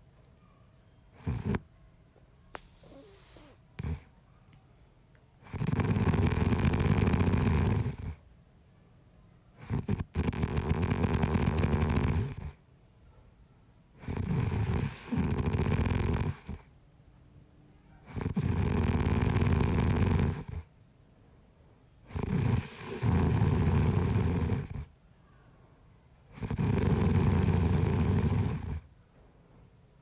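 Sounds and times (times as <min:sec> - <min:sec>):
quiet breaths: 0:00.0 - 0:30.0
man snoring: 0:05.5 - 0:08.2, 0:09.6 - 0:12.5, 0:14.0 - 0:16.6, 0:18.1 - 0:20.6, 0:22.1 - 0:24.9, 0:26.4 - 0:28.8.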